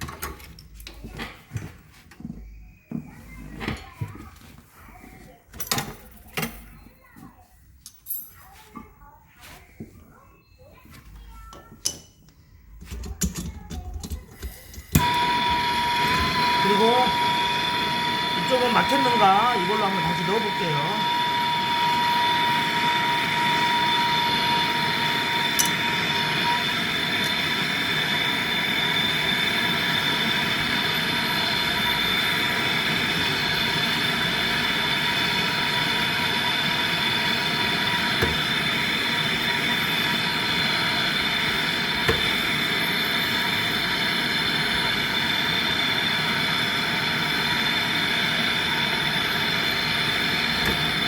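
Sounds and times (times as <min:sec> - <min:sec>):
gas rushing hiss with whistle: 0:14.9 - 0:51.0.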